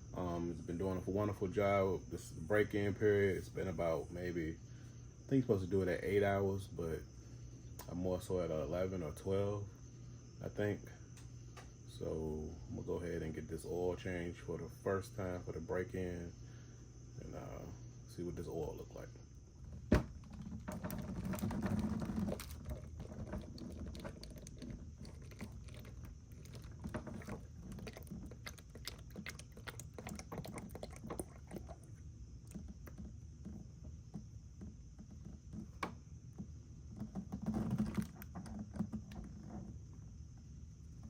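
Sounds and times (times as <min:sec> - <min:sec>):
high insect trill: 0:00.0 - 0:41.0
handling noise: 0:19.6 - 0:41.0.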